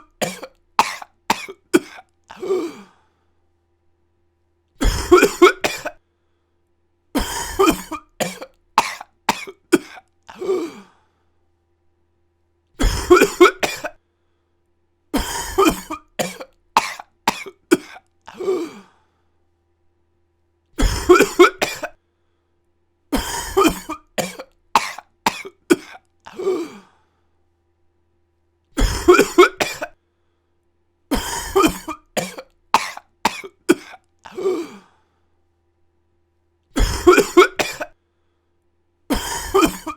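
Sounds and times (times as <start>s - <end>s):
person coughing: 0.0s - 3.0s, 4.8s - 6.0s, 7.2s - 11.0s, 12.8s - 14.0s, 15.2s - 18.9s, 20.8s - 22.0s, 23.2s - 27.0s, 28.8s - 30.0s, 31.1s - 34.9s, 36.8s - 38.0s, 39.1s - 39.9s.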